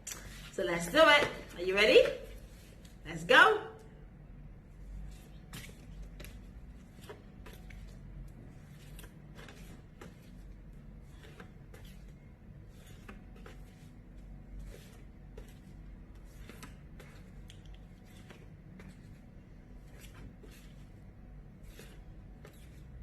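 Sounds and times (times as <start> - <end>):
paper flashcards flipped: 16.3 - 19.2.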